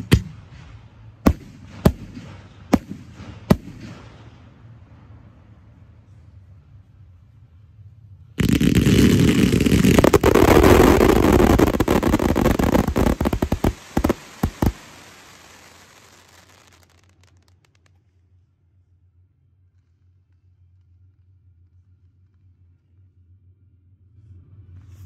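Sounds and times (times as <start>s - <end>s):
fireworks bangs and crackling: 0.0s - 4.7s, 8.4s - 17.8s.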